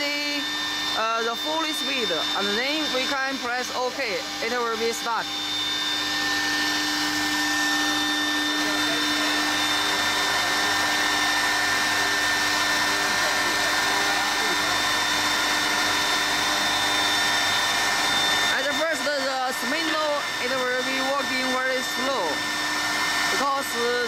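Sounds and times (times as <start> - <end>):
milling spindle high whine: 0.0 - 24.0
on-off axis feed hum: 0.0 - 24.0.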